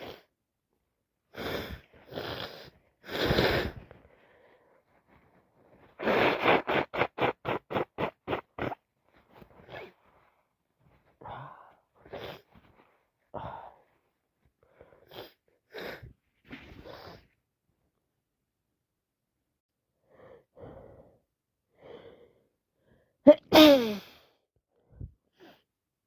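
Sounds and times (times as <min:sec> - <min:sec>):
person sniffing: 0:01.4 - 0:04.0, 0:05.8 - 0:10.1, 0:15.0 - 0:17.2, 0:23.3 - 0:24.2
person sneezing: 0:23.3 - 0:24.3.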